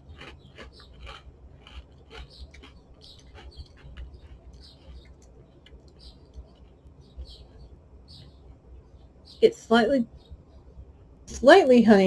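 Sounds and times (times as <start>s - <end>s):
cereal being chewed: 0.0s - 6.9s.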